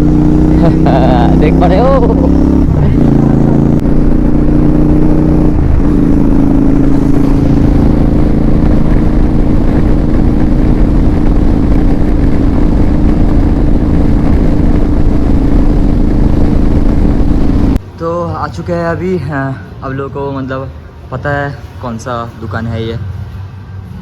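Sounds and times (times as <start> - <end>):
motorcycle engine running: 0.0 - 17.8.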